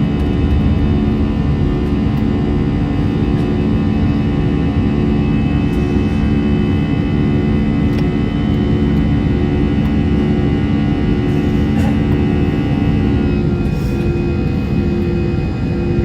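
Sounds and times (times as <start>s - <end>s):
jet engine drone in cabin: 0.0s - 16.0s.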